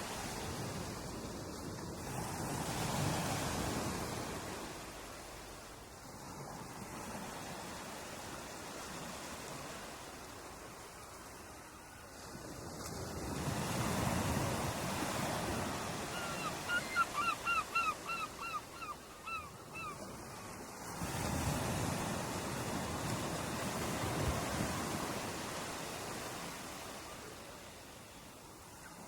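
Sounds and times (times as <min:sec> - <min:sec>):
ocean waves washing onto beach: 0:00.0 - 0:29.0.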